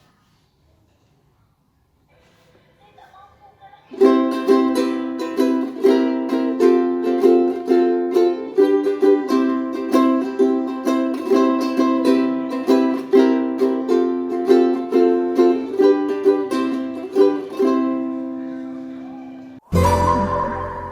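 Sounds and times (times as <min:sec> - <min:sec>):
ukulele strummed chords: 0:03.9 - 0:20.9.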